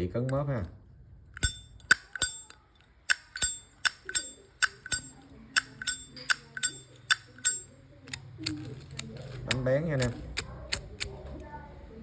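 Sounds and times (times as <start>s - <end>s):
lighter lid clicking open and shut: 1.4s - 2.5s, 3.1s - 11.1s.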